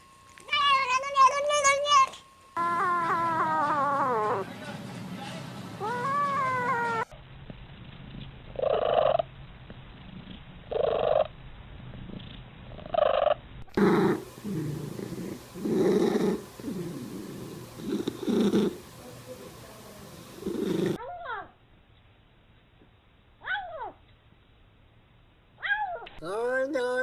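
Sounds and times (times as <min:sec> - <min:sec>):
cats meowing: 0:05.8 - 0:07.1.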